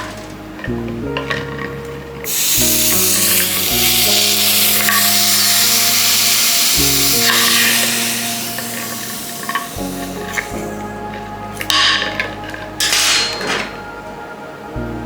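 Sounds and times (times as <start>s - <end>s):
background music: 0.0s - 15.0s
hot metal sizzling on ice: 2.3s - 10.8s.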